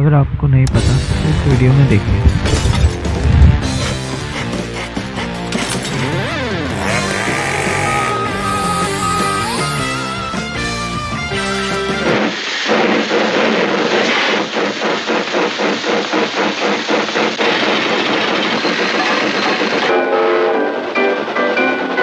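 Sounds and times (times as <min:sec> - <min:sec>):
music: 0:00.7 - 0:12.4, 0:19.8 - 0:22.0
rushing engine-like chugging noise: 0:03.0 - 0:22.0.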